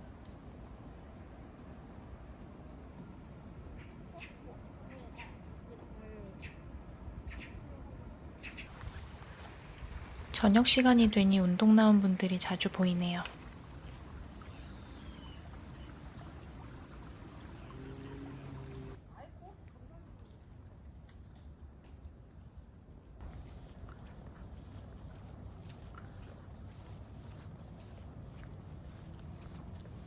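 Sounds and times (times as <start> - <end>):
high insect trill: 17.7 - 29.5.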